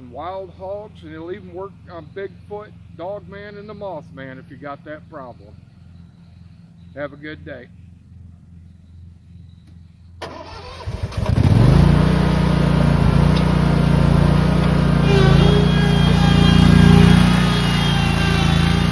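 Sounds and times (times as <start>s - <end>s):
lawn mower engine cranking and running: 10.2s - 18.9s.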